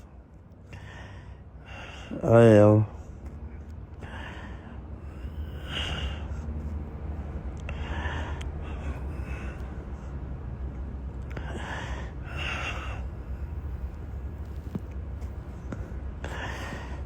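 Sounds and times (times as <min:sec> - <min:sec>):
man breathing heavily and sighing: 0:00.6 - 0:03.1, 0:03.9 - 0:06.6, 0:11.3 - 0:13.9, 0:15.7 - 0:17.0.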